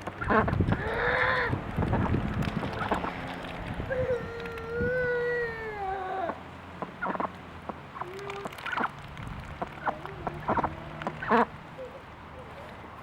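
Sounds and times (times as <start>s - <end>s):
duck quacking: 6.1s - 8.9s, 9.6s - 12.1s.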